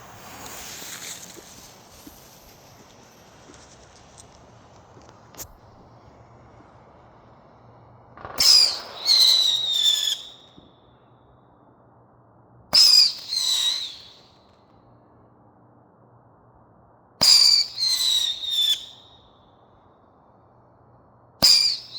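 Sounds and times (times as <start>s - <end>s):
firework whistle: 0.0s - 4.3s, 8.2s - 10.9s, 12.7s - 14.6s, 17.2s - 19.5s, 21.4s - 21.9s
firework pop: 0.2s - 2.9s, 3.5s - 5.6s.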